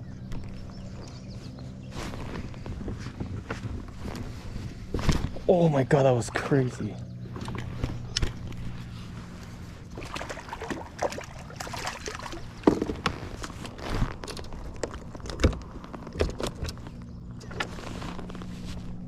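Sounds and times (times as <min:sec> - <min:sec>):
low steady hum: 0:00.0 - 0:19.0
fishing gear knocking and rustling: 0:00.2 - 0:05.5, 0:07.1 - 0:19.0.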